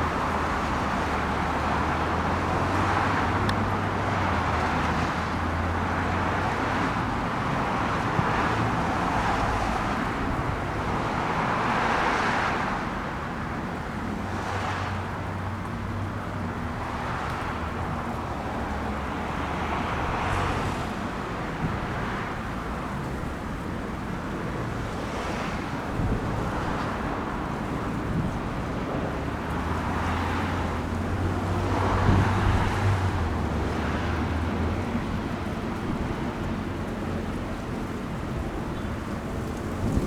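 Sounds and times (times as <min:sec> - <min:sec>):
low rumble of traffic: 0:00.0 - 0:40.0
wind on microphone: 0:25.9 - 0:36.4, 0:38.4 - 0:40.0.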